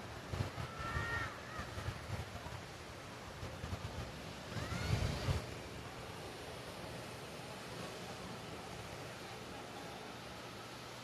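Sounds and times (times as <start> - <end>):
wind buffeting microphone: 0.0 - 7.6
ocean surf washing on shore: 0.0 - 11.0.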